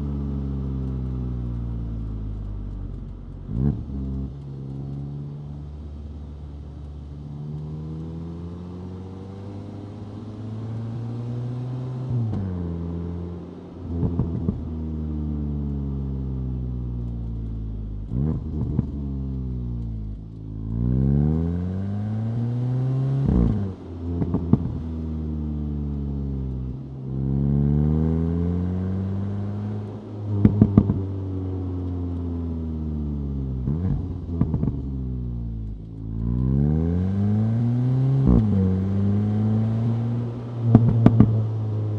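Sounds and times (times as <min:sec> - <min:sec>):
car engine accelerating: 0:00.0 - 0:41.9
exhaust pops and crackles: 0:00.8 - 0:08.1, 0:13.8 - 0:15.0, 0:16.8 - 0:20.9, 0:23.2 - 0:26.9, 0:29.8 - 0:31.2, 0:33.6 - 0:36.6, 0:40.3 - 0:41.9.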